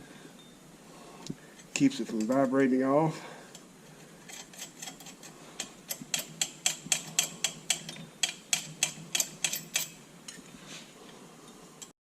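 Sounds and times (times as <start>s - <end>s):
ratchet wrench clicking: 5.9s - 10.0s.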